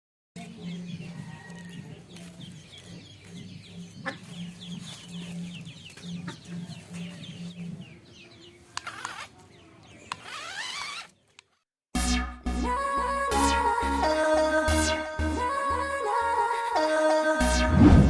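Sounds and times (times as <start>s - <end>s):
birds chirping: 0.4s - 11.6s.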